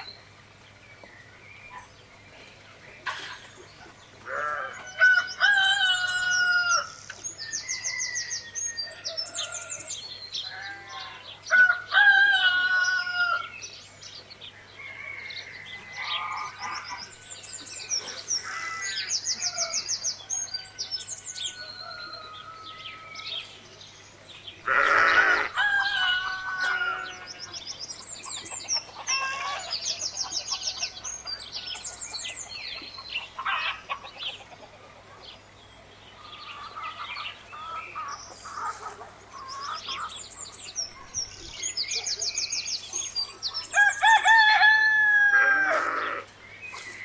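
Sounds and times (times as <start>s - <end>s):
birds chirping with trills: 0.0s - 47.0s
chicken calling: 24.6s - 27.5s, 43.7s - 46.9s.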